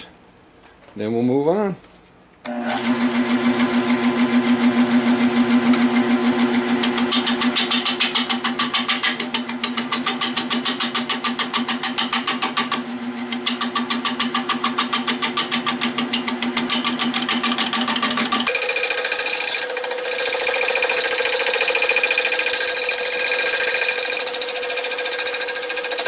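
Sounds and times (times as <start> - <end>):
wood lathe humming: 18.5 - 26.0.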